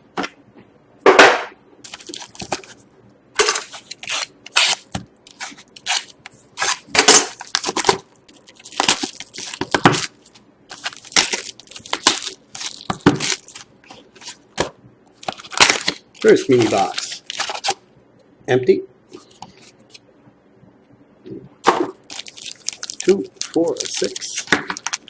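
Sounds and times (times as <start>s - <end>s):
cardboard and plastic wrap crinkling: 1.9s - 2.8s, 3.4s - 17.8s, 21.9s - 25.0s.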